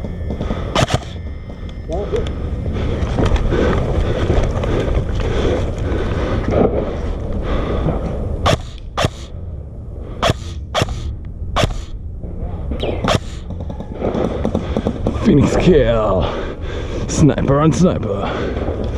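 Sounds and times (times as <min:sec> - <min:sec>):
airsoft rifle shots: 0:00.7 - 0:01.2, 0:08.4 - 0:09.3, 0:10.2 - 0:12.0, 0:12.8 - 0:14.3.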